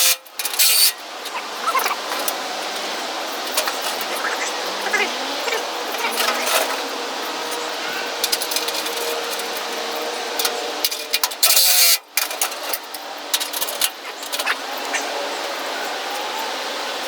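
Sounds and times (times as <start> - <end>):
metal tools clinking: 6.0 - 6.9, 10.4 - 14.5.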